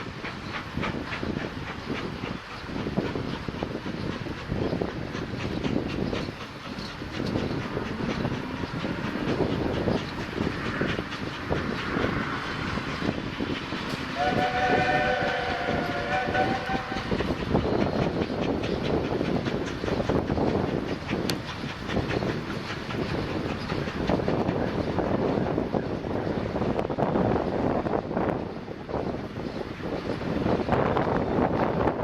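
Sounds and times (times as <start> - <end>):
steam train rumbling and clanking: 0.0 - 32.0
steam locomotive whistle: 14.0 - 17.3.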